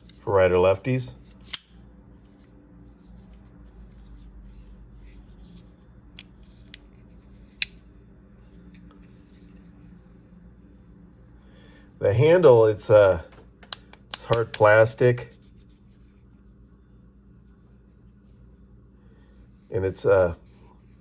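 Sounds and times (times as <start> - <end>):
folding knife clicks: 1.4 - 1.8.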